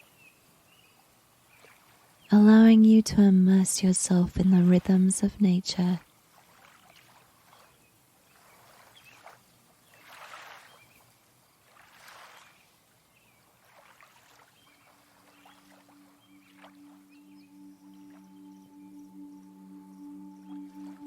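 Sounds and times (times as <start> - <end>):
lake water swishing: 0.7 - 2.3, 5.8 - 19.1
singing bowl ringing: 15.4 - 21.0.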